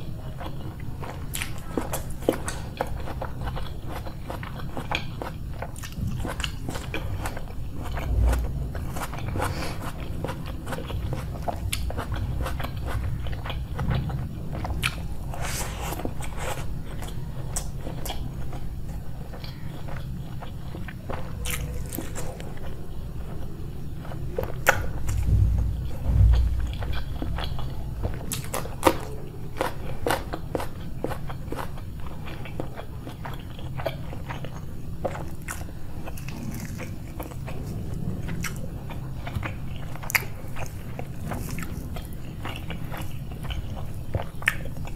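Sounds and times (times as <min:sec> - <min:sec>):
chewing and crunchy bites: 0:00.0 - 0:44.9
low thump: 0:25.0 - 0:28.2.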